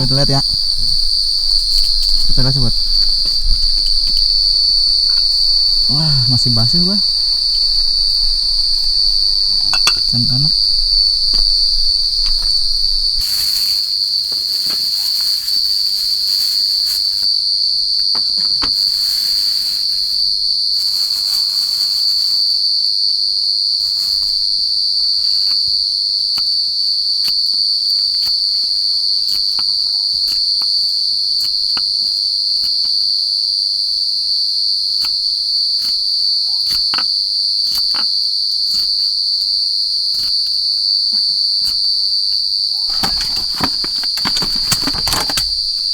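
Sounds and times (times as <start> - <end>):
insects trilling: 0.0 - 22.6, 42.8 - 45.9
scattered clicks: 42.9 - 45.9.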